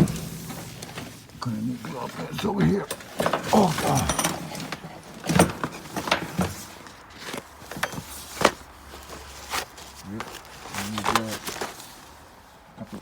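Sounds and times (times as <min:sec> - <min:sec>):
tools knocking and clattering: 0:00.0 - 0:08.6.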